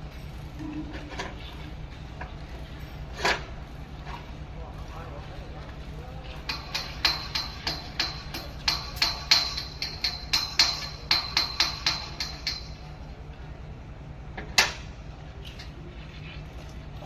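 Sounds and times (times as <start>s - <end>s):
steady low hum: 0.0s - 17.0s
hammer striking metal: 6.5s - 13.0s.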